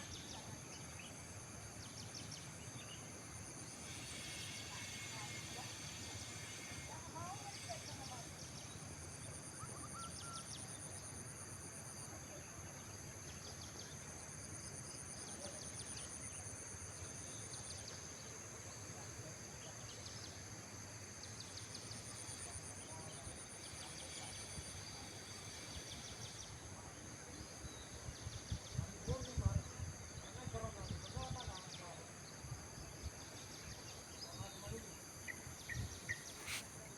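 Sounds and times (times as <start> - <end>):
outdoor background noise: 0.0 - 36.9
rapid insect chirps: 0.0 - 36.9
high thin insect trill: 3.2 - 11.3, 34.2 - 36.9.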